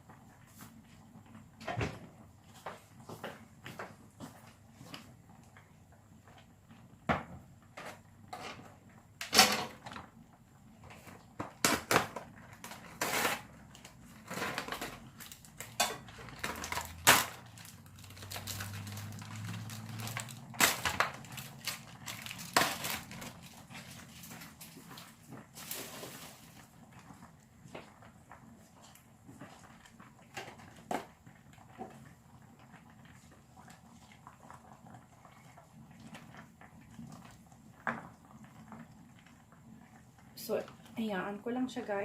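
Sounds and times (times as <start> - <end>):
kitchen items knocking and clacking: 7.8 - 10.1, 11.3 - 24.7.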